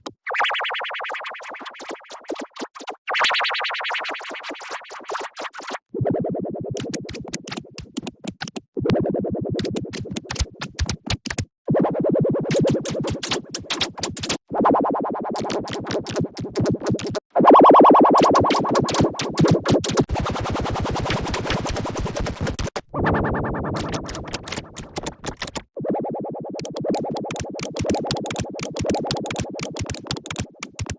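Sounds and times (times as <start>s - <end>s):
buzzy processed mouse clicks: 1.0s - 3.0s, 6.8s - 8.6s, 9.6s - 11.5s, 12.5s - 14.4s, 15.4s - 17.3s, 18.2s - 20.2s, 21.0s - 22.8s, 23.8s - 25.6s, 26.6s - 30.9s.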